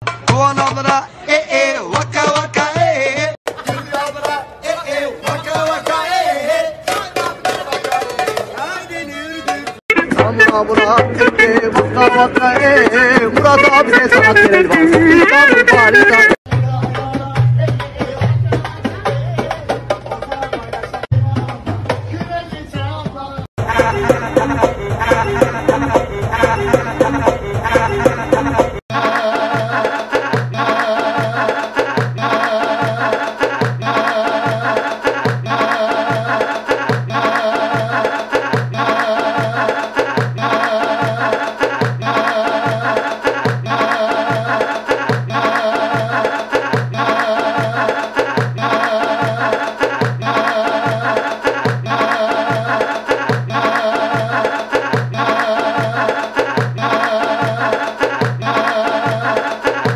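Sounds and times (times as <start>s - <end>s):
low drum beat: 16.5s - 28.8s.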